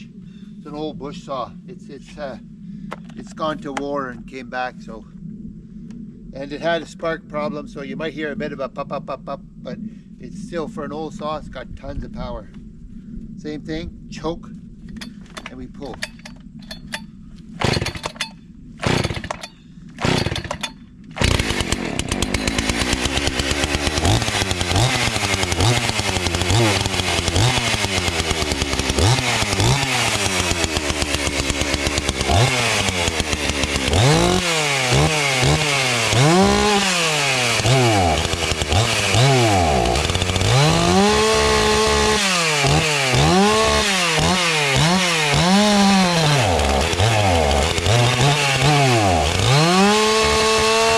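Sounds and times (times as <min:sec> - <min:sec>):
chainsaw revving: 0:17.6 - 0:50.9.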